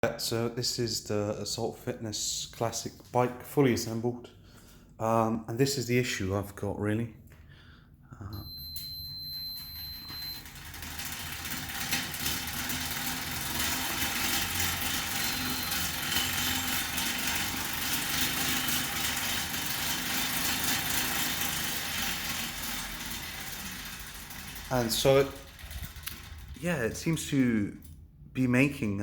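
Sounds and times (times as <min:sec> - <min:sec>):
exercise bike fan rushing air: 0:09.5 - 0:27.4
dense mechanical rattle: 0:10.2 - 0:28.0.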